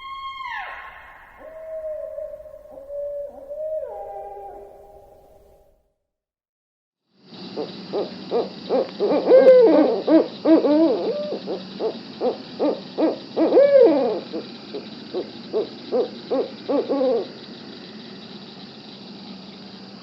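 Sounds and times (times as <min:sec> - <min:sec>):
bird call rising and falling: 0:00.0 - 0:04.8.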